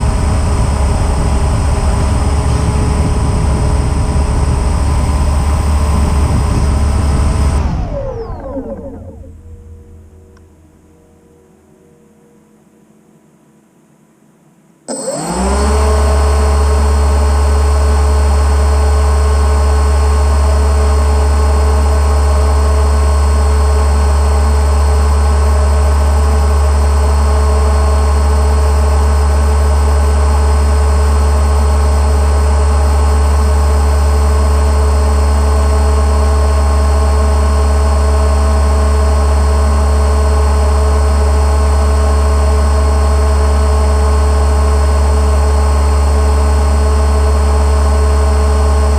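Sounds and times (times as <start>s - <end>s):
boat engine starting and running: 0.0s - 11.6s, 14.9s - 24.0s.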